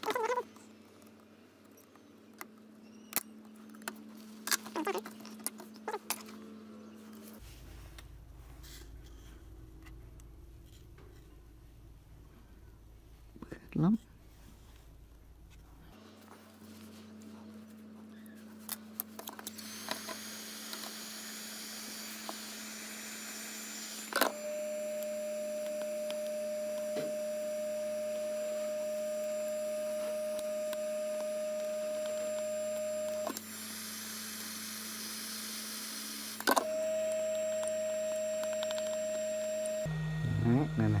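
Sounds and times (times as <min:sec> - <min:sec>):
hot air blower whirring: 0:19.5 - 0:41.0
steady electronic tone: 0:39.4 - 0:41.0.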